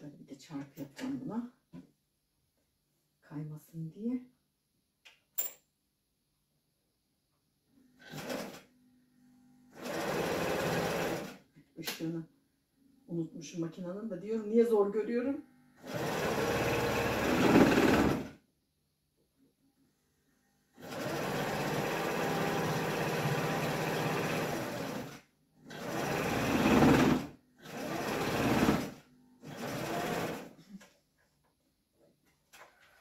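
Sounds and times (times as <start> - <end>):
sewing machine stitching: 8.0 - 8.7, 9.7 - 11.4, 15.8 - 18.4, 20.8 - 30.6.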